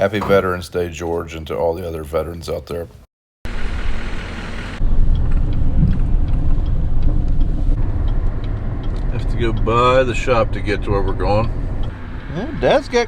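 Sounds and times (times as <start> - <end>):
vehicle engine running: 3.5 - 13.0.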